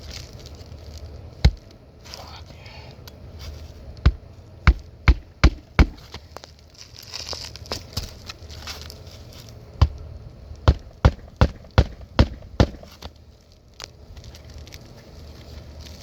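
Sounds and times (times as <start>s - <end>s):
rustle: 0.0s - 4.9s, 5.9s - 10.2s, 12.8s - 16.0s
hammer striking nails: 4.1s - 6.1s, 10.7s - 13.1s.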